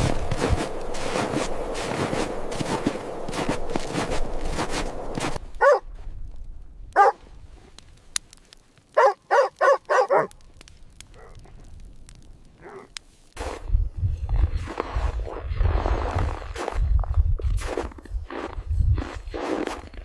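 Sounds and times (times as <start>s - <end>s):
dog barking: 5.6s - 5.8s, 7.0s - 7.2s, 9.0s - 10.3s.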